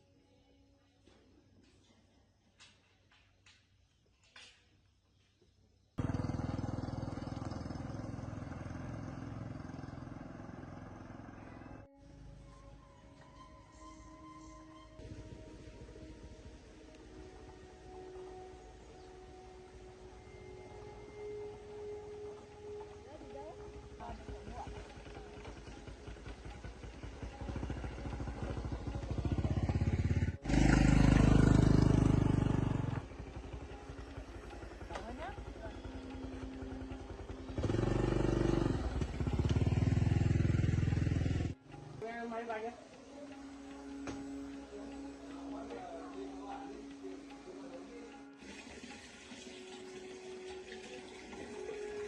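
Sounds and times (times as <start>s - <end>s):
engine running: 6.0s - 13.3s, 15.0s - 48.4s.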